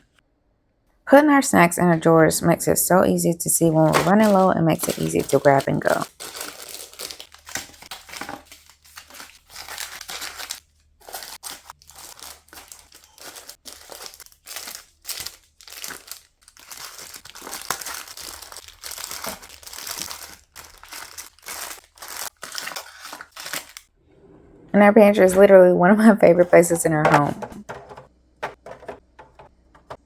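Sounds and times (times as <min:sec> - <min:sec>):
plastic packets crinkling: 0:03.6 - 0:23.9, 0:27.0 - 0:30.0.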